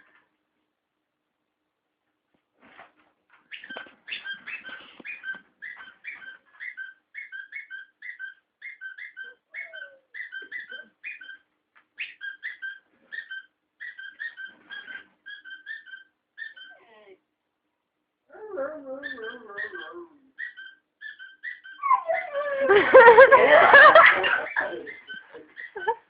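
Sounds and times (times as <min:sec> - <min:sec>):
dog squealing: 0:03.6 - 0:11.4, 0:12.0 - 0:16.8, 0:19.0 - 0:26.0
dog whimpering: 0:09.0 - 0:11.4, 0:18.3 - 0:23.0, 0:24.0 - 0:26.0.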